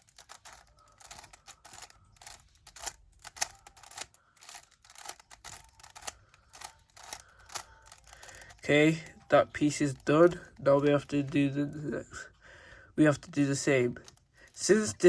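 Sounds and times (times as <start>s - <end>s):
plastic puzzle cube clicking: 0.0s - 10.6s.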